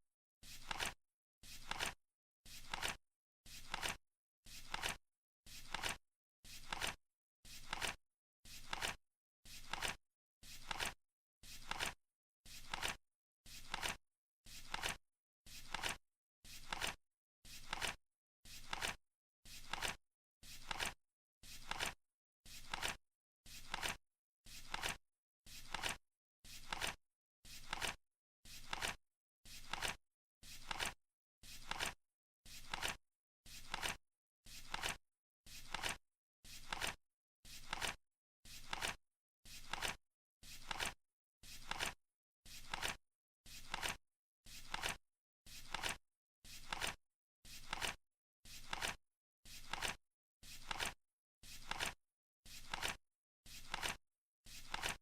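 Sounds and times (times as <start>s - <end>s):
flip clock card flipping: 0.6s - 1.0s, 1.6s - 2.0s, 2.6s - 3.0s, 3.6s - 4.0s, 4.7s - 5.0s, 5.7s - 6.0s, 6.6s - 7.0s, 7.6s - 8.0s, 8.6s - 9.0s, 10.6s - 11.0s, 13.6s - 14.0s, 15.7s - 16.0s, 16.6s - 17.0s, 18.6s - 19.0s, 19.6s - 20.0s, 20.6s - 21.0s, 21.6s - 22.0s, 22.6s - 23.0s, 23.7s - 24.0s, 24.7s - 25.0s, 25.7s - 26.0s, 26.6s - 27.0s, 27.6s - 28.0s, 28.6s - 29.0s, 29.6s - 30.0s, 30.6s - 31.0s, 31.6s - 32.0s, 32.6s - 33.0s, 33.6s - 34.0s, 34.7s - 35.0s, 35.7s - 36.0s, 36.6s - 37.0s, 37.6s - 38.0s, 38.6s - 39.0s, 39.6s - 40.0s, 40.6s - 41.0s, 41.6s - 42.0s, 42.6s - 43.0s, 43.6s - 44.0s, 44.7s - 45.0s, 45.7s - 46.0s, 46.6s - 47.0s, 47.6s - 48.0s, 48.6s - 49.0s, 49.6s - 50.0s, 50.6s - 51.0s, 51.6s - 52.0s, 52.6s - 53.0s, 53.6s - 54.0s, 54.7s - 55.0s.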